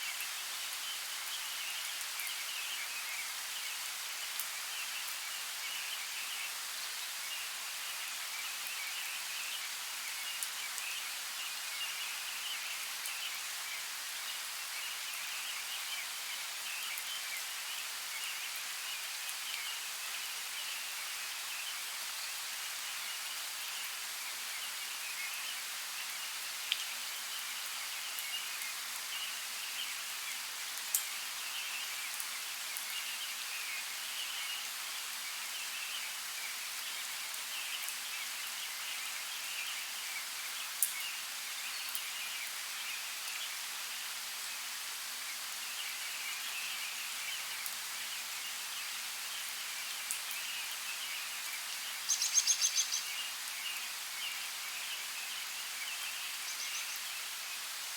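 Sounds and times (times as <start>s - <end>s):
light rain in forest: 0.0s - 57.9s.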